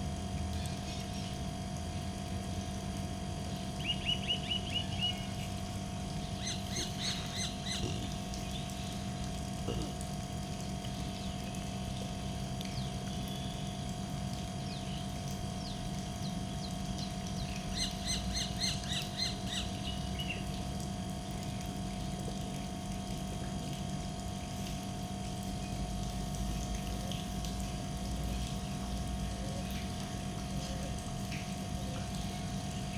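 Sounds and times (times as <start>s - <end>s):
steady background hum: 0.0s - 32.9s
rapid repeated bird calls: 6.2s - 9.0s, 15.6s - 20.5s.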